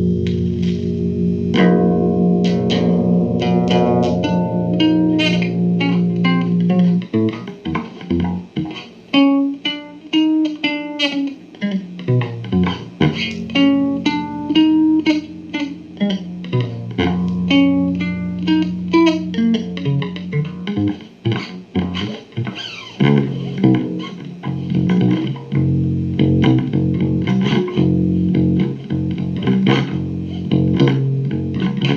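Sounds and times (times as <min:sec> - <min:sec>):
plucked guitar music: 0:00.0 - 0:31.9.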